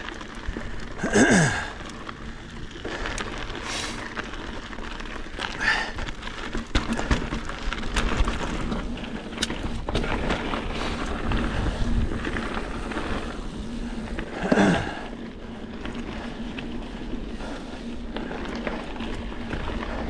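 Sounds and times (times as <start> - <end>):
bike rattling: 0.0 - 20.0
bike tyres crunching on dirt: 0.0 - 20.0
wind on microphone: 10.7 - 14.0.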